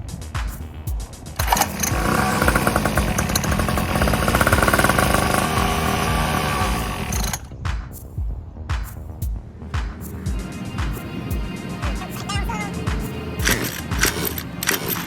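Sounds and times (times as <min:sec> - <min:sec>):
small dirt bike engine popping: 0:01.4 - 0:07.5, 0:13.4 - 0:15.0.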